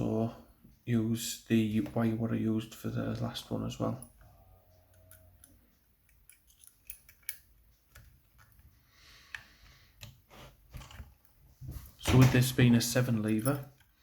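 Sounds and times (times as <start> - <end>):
lock picking tools clicking: 4.9 - 8.6, 13.1 - 14.0.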